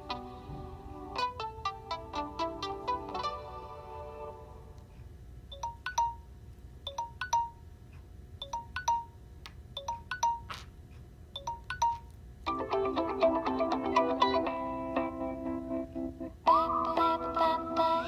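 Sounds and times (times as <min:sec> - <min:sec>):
plucked-string ringtone: 0:05.5 - 0:06.2
phone chime ringtone: 0:05.5 - 0:06.3, 0:06.9 - 0:07.6, 0:08.4 - 0:09.2, 0:09.8 - 0:10.6, 0:11.4 - 0:12.1.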